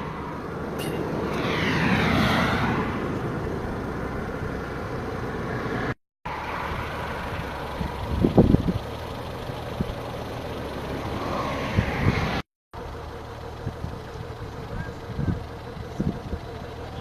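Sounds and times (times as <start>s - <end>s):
vehicle passing: 0.0s - 9.7s, 10.6s - 12.4s
low traffic rumble: 0.0s - 17.0s.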